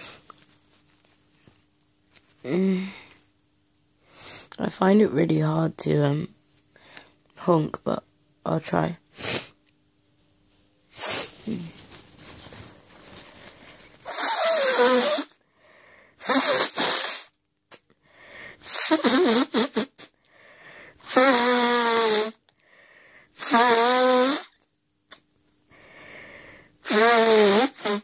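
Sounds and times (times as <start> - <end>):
person blowing nose: 9.1 - 9.6, 10.9 - 11.8, 13.1 - 15.4, 16.2 - 17.8, 18.5 - 20.2, 20.8 - 22.4, 23.3 - 25.2, 26.8 - 28.0.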